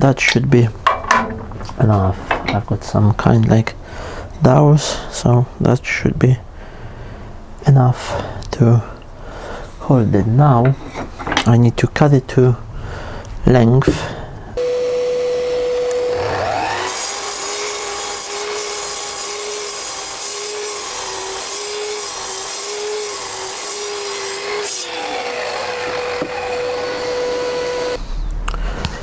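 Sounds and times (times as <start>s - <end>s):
electric saw motor whine: 14.6s - 28.0s
saw cutting wood hiss: 14.6s - 28.0s.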